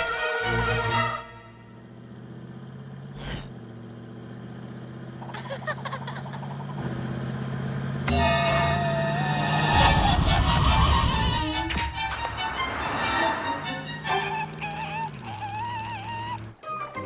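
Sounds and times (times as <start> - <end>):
warbling effect: 8.1 - 16.4.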